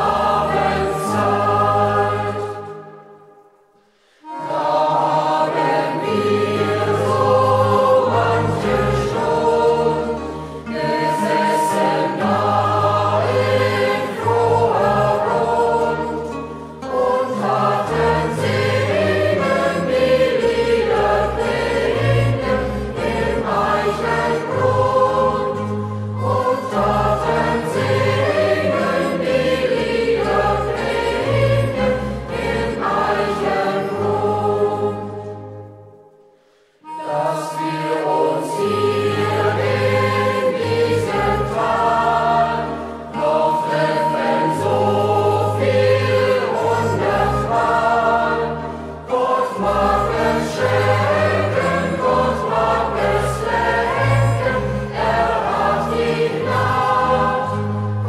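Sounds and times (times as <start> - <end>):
choir singing: 0.0 - 58.0.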